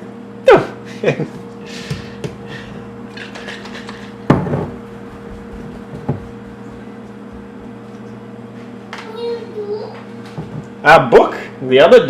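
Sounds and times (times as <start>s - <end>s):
steady low hum: 0.0s - 12.0s
cupboard door knocking shut: 4.3s - 4.8s.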